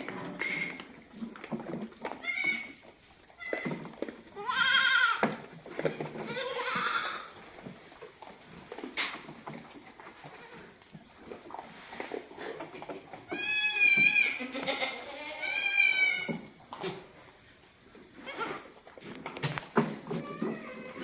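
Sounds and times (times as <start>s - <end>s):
goats bleating: 4.4s - 5.2s, 6.0s - 7.4s, 13.2s - 16.4s.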